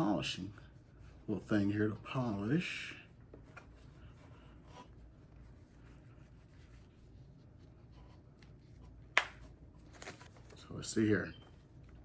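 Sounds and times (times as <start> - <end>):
soft handling clicks and rustles: 3.1 - 12.0.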